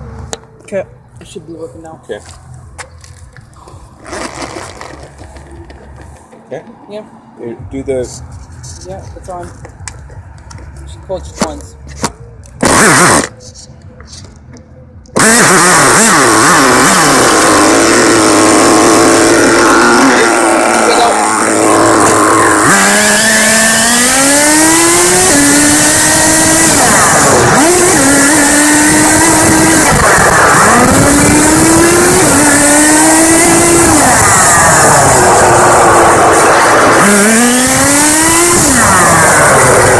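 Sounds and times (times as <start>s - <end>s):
rc car engine whining: 12.6s - 13.4s, 15.1s - 39.9s.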